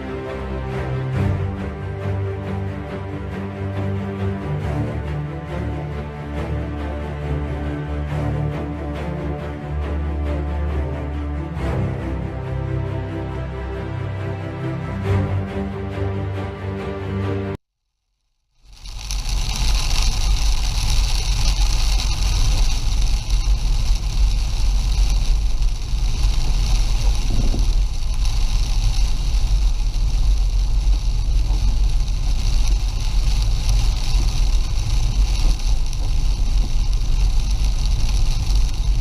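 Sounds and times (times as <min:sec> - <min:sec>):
gusty wind buffeting microphone: 0:20.4 - 0:39.0.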